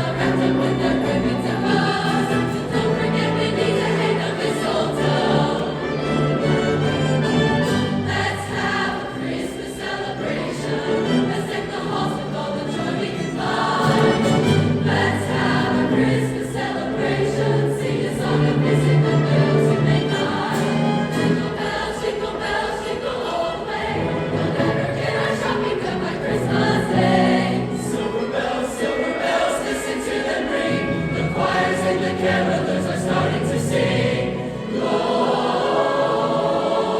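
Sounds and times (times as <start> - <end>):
choir singing sustained notes: 0.0 - 36.9.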